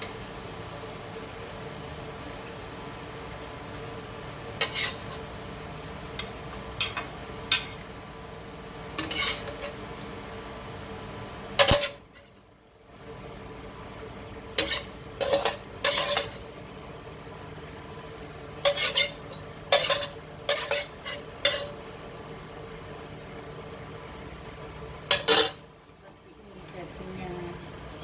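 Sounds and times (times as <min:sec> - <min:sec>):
metal utensil scraping a pan: 0:04.6 - 0:05.3, 0:06.2 - 0:07.8, 0:09.0 - 0:09.8, 0:11.6 - 0:12.5, 0:14.5 - 0:16.5, 0:18.6 - 0:21.8, 0:25.1 - 0:25.6.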